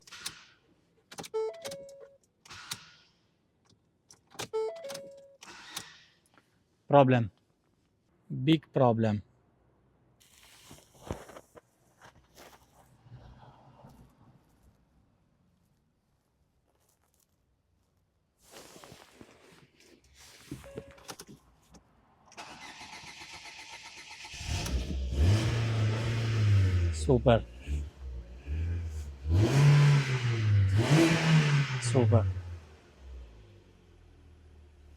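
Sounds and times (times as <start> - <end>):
car engine running: 24.4 - 34.9.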